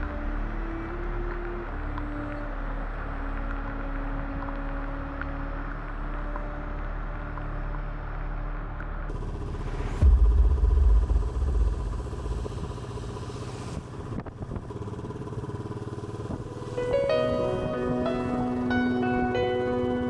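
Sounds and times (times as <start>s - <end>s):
vehicle engine droning: 0.0s - 20.0s
loud low rumble: 9.1s - 20.0s.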